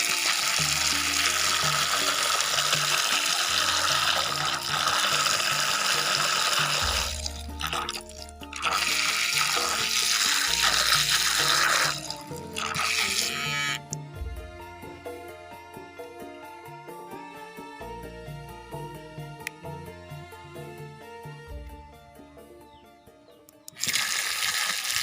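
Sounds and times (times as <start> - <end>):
water churning and splashing: 0.0 - 13.4, 23.8 - 25.0
background music with bass line: 0.0 - 25.0.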